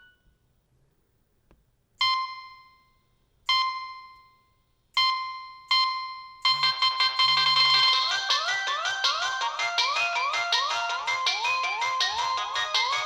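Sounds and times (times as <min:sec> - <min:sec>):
phone ringtone: 0:05.0 - 0:13.0.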